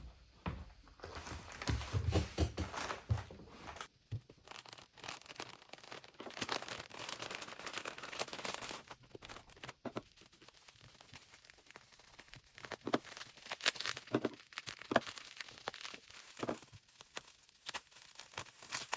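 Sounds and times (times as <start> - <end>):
packaging crinkling and tearing: 3.8 - 18.9.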